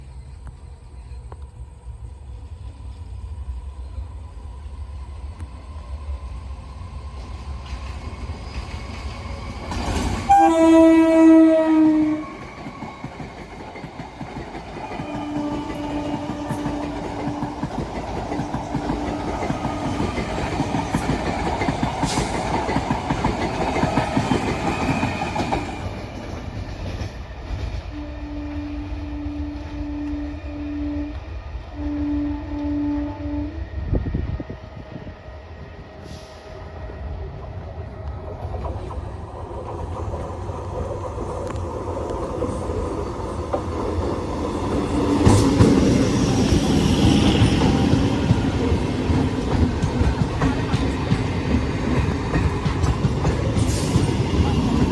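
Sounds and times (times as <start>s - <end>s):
train rumble: 0.0s - 54.9s
train coaches clattering: 6.6s - 32.6s, 35.7s - 54.9s
train horn blast: 10.3s - 12.6s, 14.8s - 19.9s, 27.9s - 35.3s.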